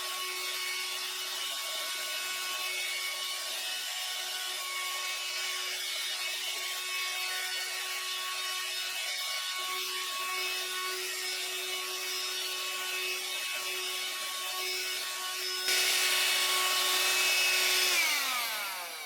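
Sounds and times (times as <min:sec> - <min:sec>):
hand-held vacuum cleaner motor whine: 0:00.0 - 0:19.0.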